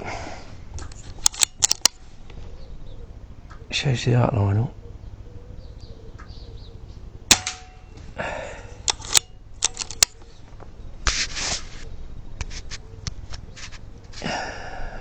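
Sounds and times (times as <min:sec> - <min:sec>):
sharp clicks: 0:00.8 - 0:02.0, 0:07.3 - 0:08.0, 0:08.8 - 0:10.3
rustling: 0:08.8 - 0:14.4.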